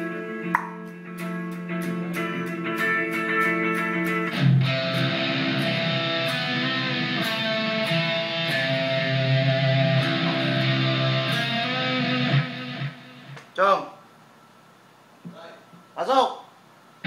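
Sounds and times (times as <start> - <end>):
distorted electric guitar chords: 0.0 - 13.4.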